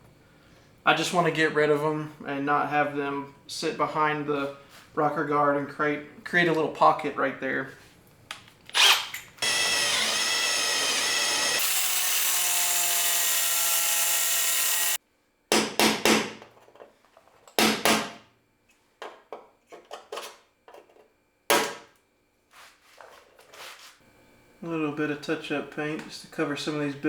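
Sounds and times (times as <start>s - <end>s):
electric drill whining: 8.7s - 15.0s.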